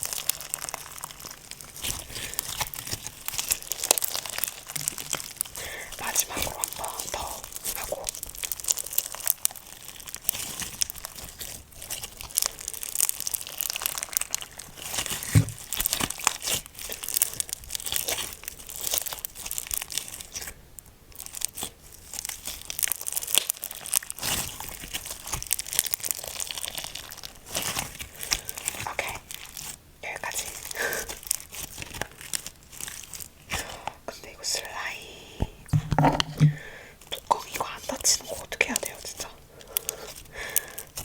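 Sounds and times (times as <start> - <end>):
slime crackling and popping: 0.0 - 41.0.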